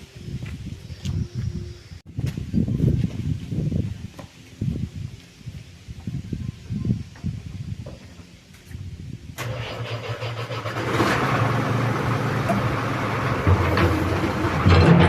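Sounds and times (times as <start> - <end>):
excavator engine running: 9.4 - 15.0.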